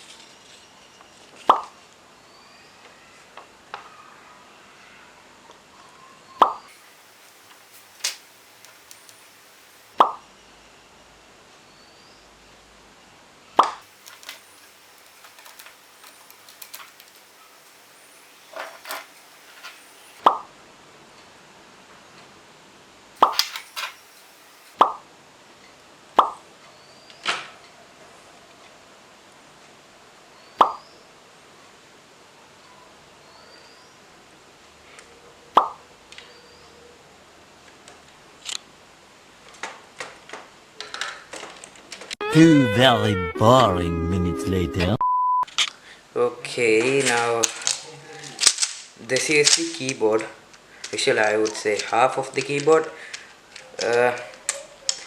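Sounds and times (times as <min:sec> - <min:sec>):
soft hissing tick: 0:06.7 - 0:10.0, 0:13.9 - 0:20.2.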